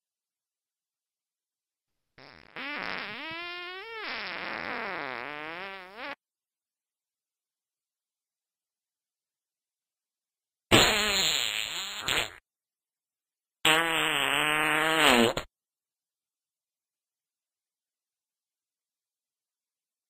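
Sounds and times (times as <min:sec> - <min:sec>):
long buzzing farts: 0:02.2 - 0:06.2, 0:10.7 - 0:12.4, 0:13.6 - 0:15.5.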